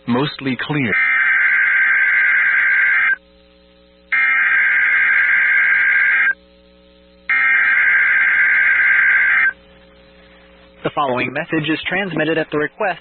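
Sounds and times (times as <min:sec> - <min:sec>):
buzzing digital data bursts: 0:00.1 - 0:09.6.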